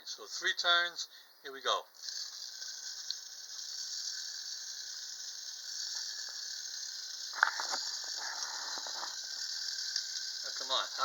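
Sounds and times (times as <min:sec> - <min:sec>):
wind-up toy motor whirring: 0:02.0 - 0:11.0
faint mechanism ticks: 0:05.5 - 0:11.0.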